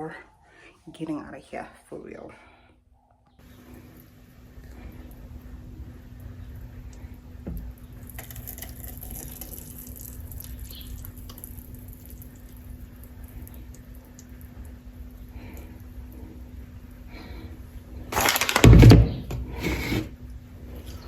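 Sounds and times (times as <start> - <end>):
water dripping: 6.2 - 16.2
tap water running and splashing: 6.9 - 14.8.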